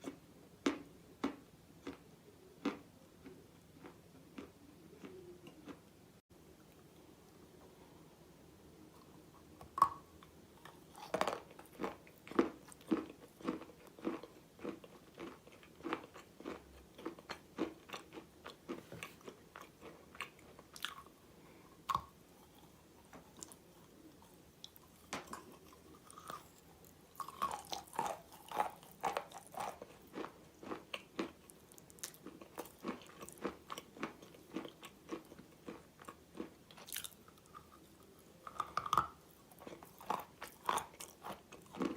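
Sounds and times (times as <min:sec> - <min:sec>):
crunchy chewing: 0:10.6 - 0:21.1, 0:21.9 - 0:41.9.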